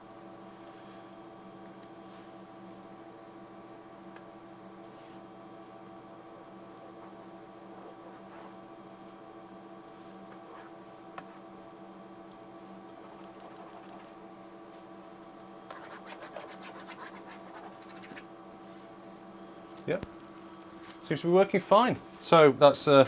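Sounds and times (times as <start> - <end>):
electrical hum: 0.0 - 23.0
stylus scratching on graphics tablet: 7.7 - 8.6, 12.7 - 14.2, 15.7 - 18.3.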